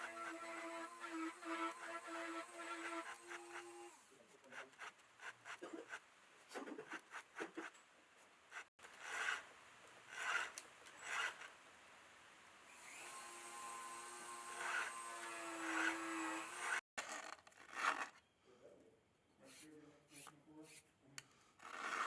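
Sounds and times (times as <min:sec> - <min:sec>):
file rasping on chainsaw chain: 0:00.0 - 0:06.0, 0:08.5 - 0:09.4, 0:10.1 - 0:11.5, 0:21.6 - 0:22.0.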